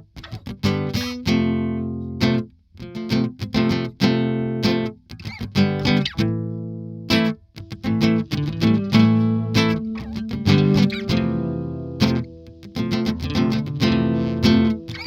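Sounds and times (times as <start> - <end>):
struck notes and chords ringing: 7.1 - 15.0.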